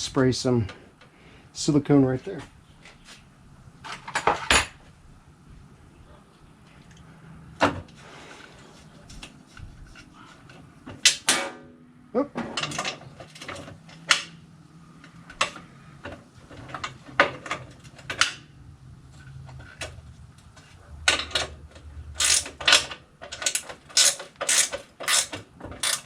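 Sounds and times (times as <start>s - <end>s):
ratchet wrench clicking: 22.2s - 26.0s.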